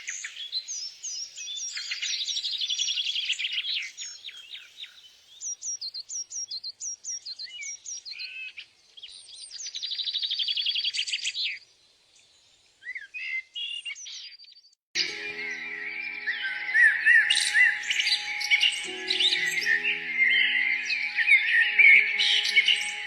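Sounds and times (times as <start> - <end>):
songbird singing: 15.0 - 23.0.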